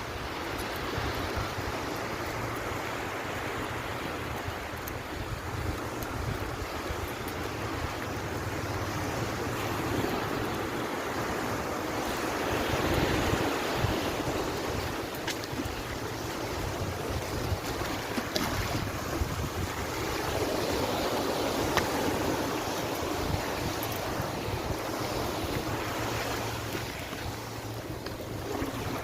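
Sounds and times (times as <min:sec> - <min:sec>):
sea waves washing on beach: 0:00.0 - 0:29.0
wind buffeting microphone: 0:00.2 - 0:29.0
faint clicks: 0:04.2 - 0:08.1.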